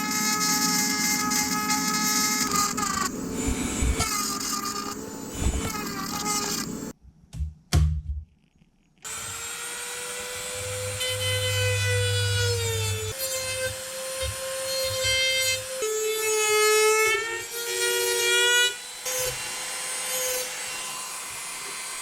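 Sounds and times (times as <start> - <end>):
power tool whining: 0.0 - 6.9, 9.1 - 15.8.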